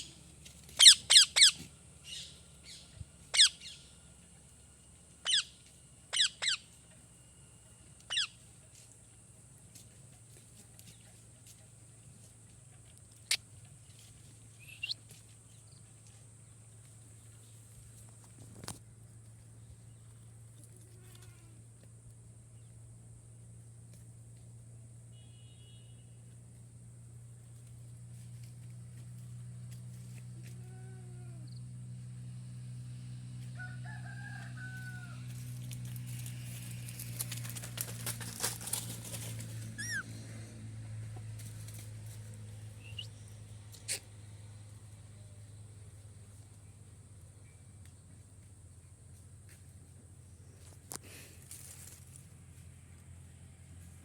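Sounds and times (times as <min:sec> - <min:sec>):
steady low hum: 0:00.0 - 0:25.2
birds calling: 0:00.7 - 0:04.0, 0:05.2 - 0:06.8, 0:08.1 - 0:08.4, 0:39.7 - 0:40.2
parrot chirp rising in pitch: 0:00.8 - 0:02.8, 0:05.3 - 0:05.5, 0:39.8 - 0:40.0.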